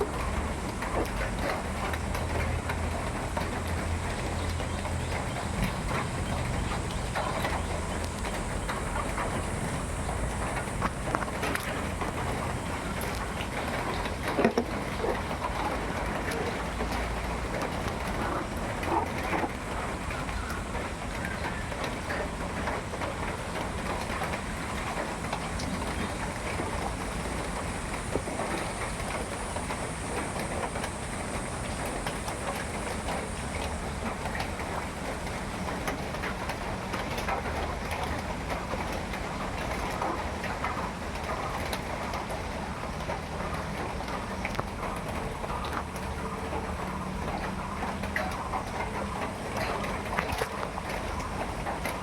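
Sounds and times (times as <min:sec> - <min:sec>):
rain pattering: 0:00.0 - 0:52.0.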